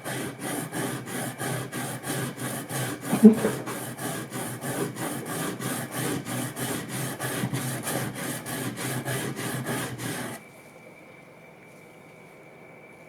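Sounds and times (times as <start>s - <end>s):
blade rubbing on sharpening stone: 0.0s - 10.4s.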